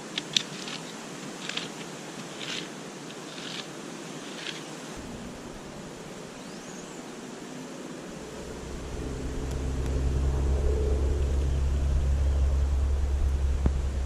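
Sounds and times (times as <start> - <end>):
wind buffeting microphone: 5.0 - 7.3, 8.0 - 14.0.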